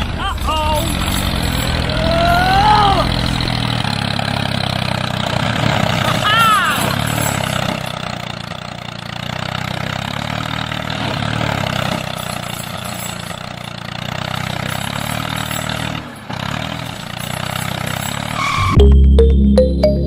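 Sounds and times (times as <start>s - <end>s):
small toy motor running: 0.6s - 3.8s.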